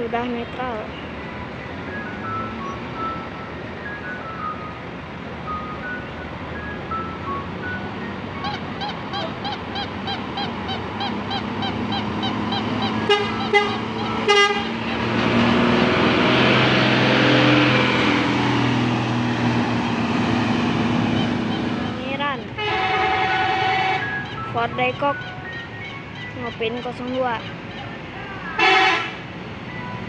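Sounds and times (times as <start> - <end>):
bus engine running: 0.0 - 30.0
bus musical horn warbling tune: 7.8 - 15.4, 20.4 - 24.6, 28.5 - 29.3
loud horn blasts: 11.1 - 15.2, 21.0 - 22.0, 22.6 - 24.4, 28.5 - 29.2.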